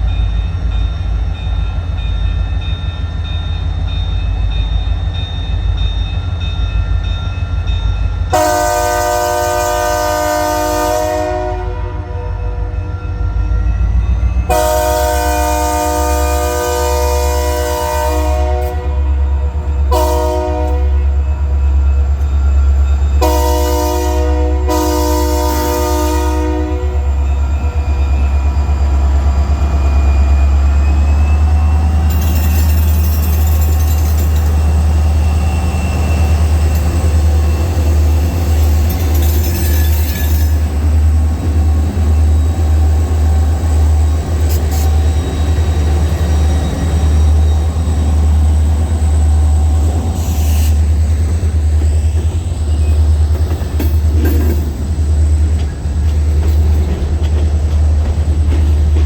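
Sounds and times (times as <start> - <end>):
locomotive air horn blasts: 8.3 - 12.8, 14.5 - 21.2, 23.2 - 27.2
wheels on rail: 12.6 - 59.0.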